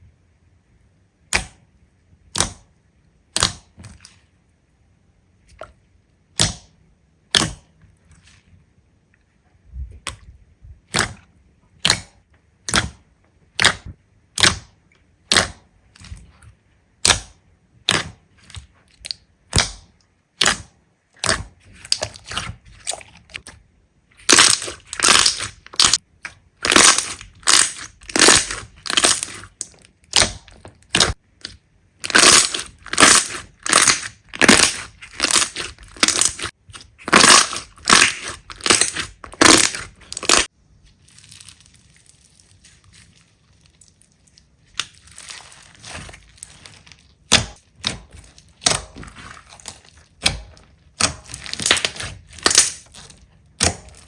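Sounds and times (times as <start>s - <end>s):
slime popping and crackling: 11.8s - 16.4s, 17.0s - 23.6s, 24.2s - 54.0s.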